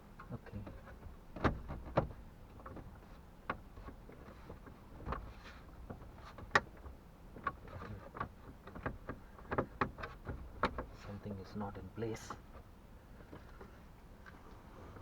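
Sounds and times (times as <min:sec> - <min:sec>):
plastic trim panel clicks and knocks: 0:05.9 - 0:10.9.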